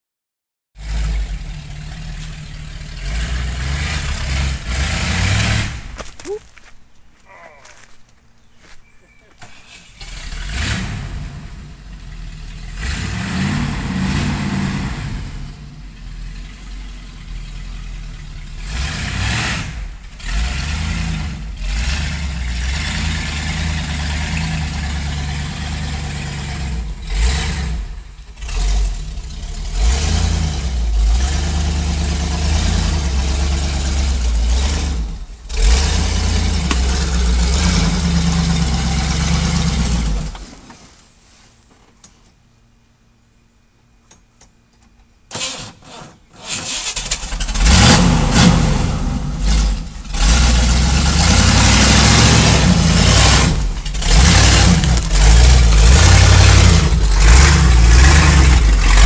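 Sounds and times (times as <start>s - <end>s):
truck engine revving: 0.8s - 6.2s, 9.4s - 40.6s, 46.4s - 59.0s.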